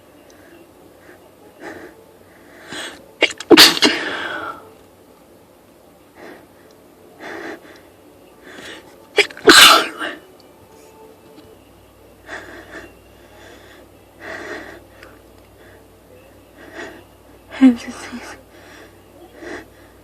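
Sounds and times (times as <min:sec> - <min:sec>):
woman sneezing: 0:03.2 - 0:04.4, 0:09.2 - 0:10.2
woman breathing: 0:06.2 - 0:09.0, 0:12.2 - 0:16.0, 0:18.0 - 0:20.0.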